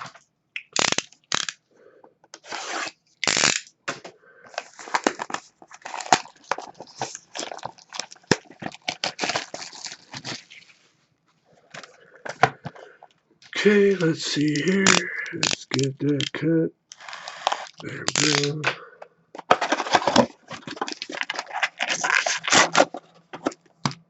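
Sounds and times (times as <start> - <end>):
plastic wrapping crinkling and tearing: 3.2 - 3.6, 4.5 - 10.8, 13.6 - 16.3, 17.0 - 18.7, 19.5 - 23.2.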